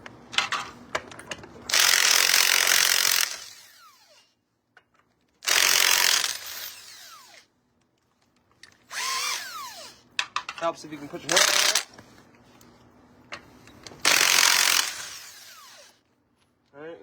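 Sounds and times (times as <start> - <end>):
impact wrench hammering: 14.0 - 15.9.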